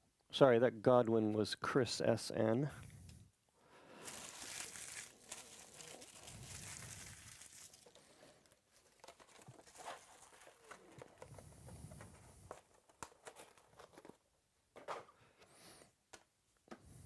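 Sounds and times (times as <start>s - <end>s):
wrapper crinkling and tearing: 3.9s - 11.0s.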